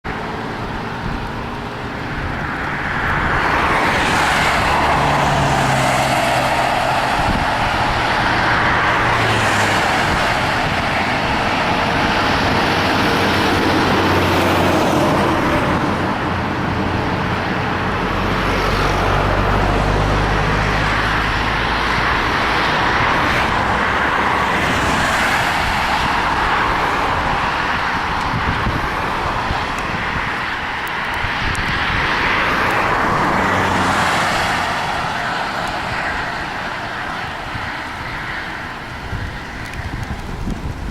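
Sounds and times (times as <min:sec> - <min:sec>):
heavy engines humming: 0:00.0 - 0:40.9
road traffic rushing past: 0:00.0 - 0:40.9.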